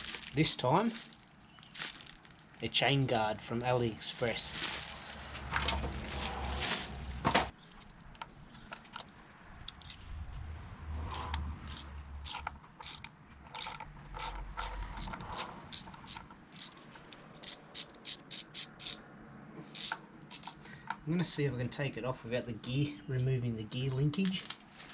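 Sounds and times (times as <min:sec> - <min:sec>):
ratchet wrench clicking: 0:09.7 - 0:10.0, 0:11.1 - 0:16.8, 0:17.4 - 0:19.0, 0:19.7 - 0:20.6
tool handling noise: 0:09.7 - 0:10.0, 0:11.1 - 0:19.0, 0:19.7 - 0:20.6.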